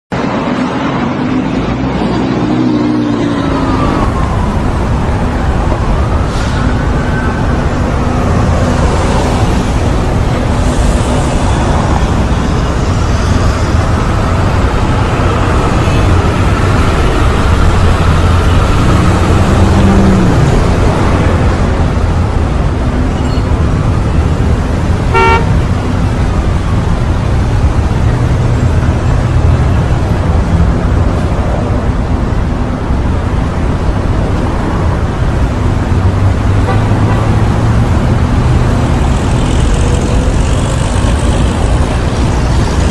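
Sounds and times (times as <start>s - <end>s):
street traffic rumble: 0.1s - 42.9s
short car horn toot: 25.1s - 25.5s.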